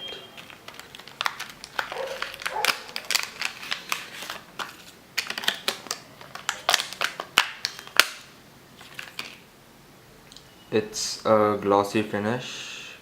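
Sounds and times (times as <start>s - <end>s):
packaging clicking and crinkling: 0.3s - 9.4s.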